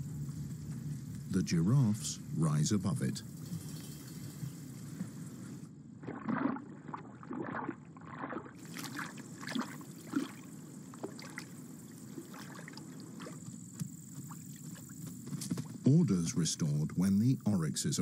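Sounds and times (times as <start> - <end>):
faint steady background noise: 0.0 - 18.0
water splashing and sloshing: 5.9 - 15.1.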